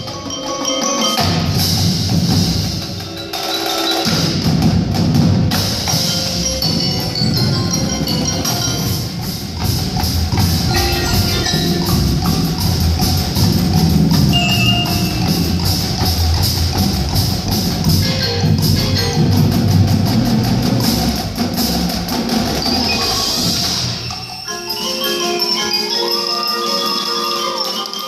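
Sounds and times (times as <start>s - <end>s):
drums: 0.0s - 28.0s
mallet percussion: 0.0s - 28.0s
marching band playing: 0.0s - 28.0s
wood block: 5.6s - 21.6s.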